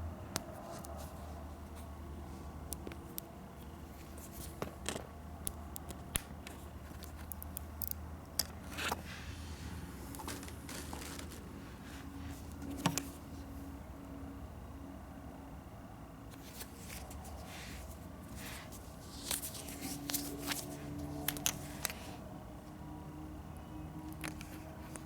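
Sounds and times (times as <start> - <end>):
steady low hum: 0.0 - 25.0
handling clicks and scrapes: 2.8 - 13.5, 16.3 - 22.2.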